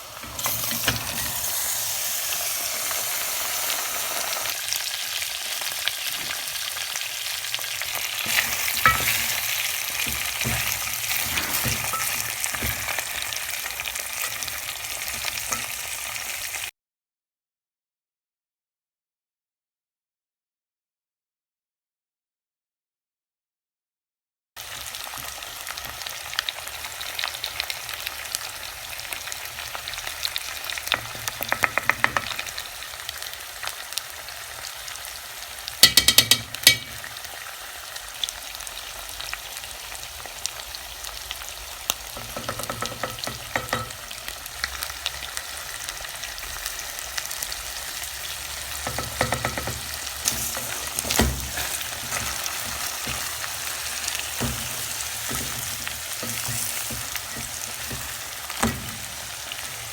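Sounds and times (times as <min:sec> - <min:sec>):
spoon scraping a pan: 0:00.0 - 0:04.6, 0:07.7 - 0:16.6, 0:30.8 - 0:32.6, 0:35.8 - 0:37.2, 0:42.1 - 0:44.2, 0:48.8 - 0:59.9
meat sizzling in oil: 0:00.0 - 0:16.7, 0:24.6 - 0:59.9.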